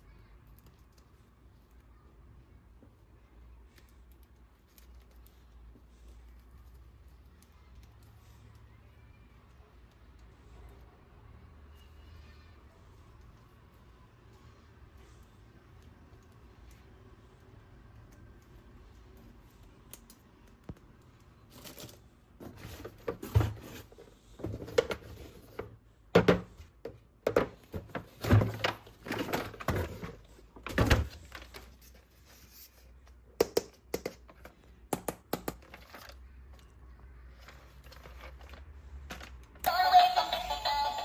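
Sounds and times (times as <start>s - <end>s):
plastic toys knocking and clicking: 24.4s - 31.7s, 33.3s - 36.2s.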